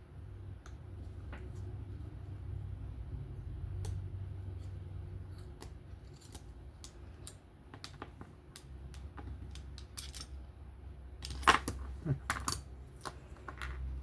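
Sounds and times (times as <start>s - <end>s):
small metal parts clicking: 4.6s - 10.4s.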